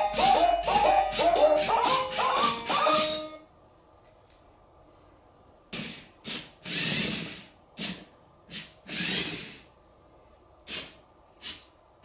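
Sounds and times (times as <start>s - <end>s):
toy robot whirring bursts: 0.0s - 3.3s, 5.7s - 9.7s, 10.6s - 11.7s.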